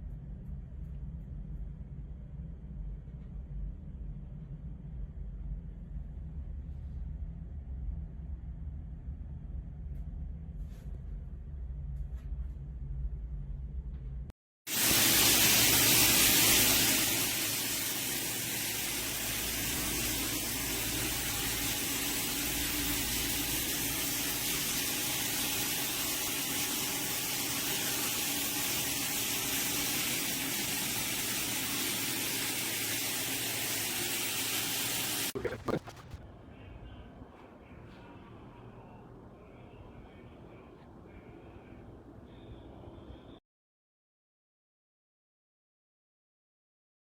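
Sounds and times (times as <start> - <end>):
shower water spraying: 14.7 - 36.2.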